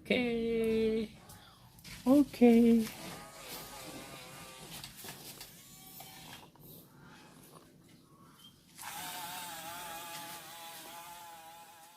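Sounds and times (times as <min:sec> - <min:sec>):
toy electric motor whine: 0:05.6 - 0:06.5, 0:08.8 - 0:11.9.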